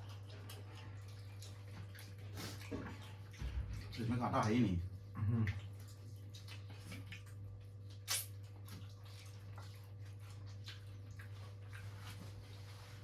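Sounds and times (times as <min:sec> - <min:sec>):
person chewing food: 0:05.5 - 0:12.7.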